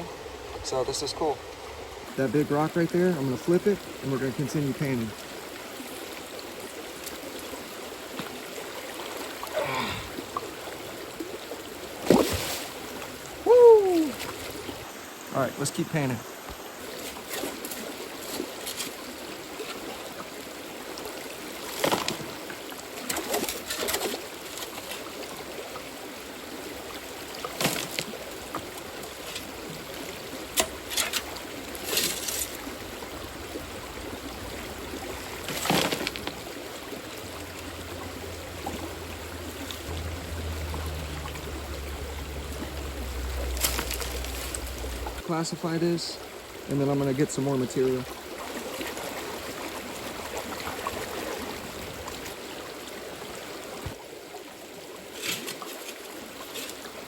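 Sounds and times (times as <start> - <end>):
creek running: 0.0 - 57.0
water sloshing in gold pan: 11.9 - 13.2, 16.8 - 45.2
low rumble: 32.8 - 45.3.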